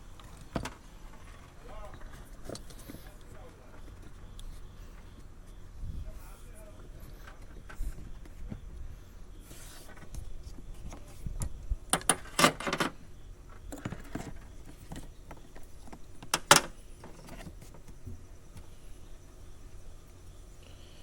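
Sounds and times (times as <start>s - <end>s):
clinks and knocks of tools: 11.9s - 13.0s.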